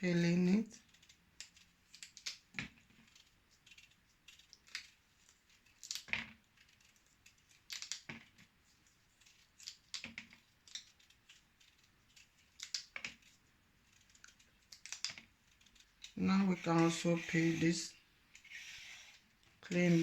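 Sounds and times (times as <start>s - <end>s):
vegetable peeler scraping: 16.2s - 20.0s.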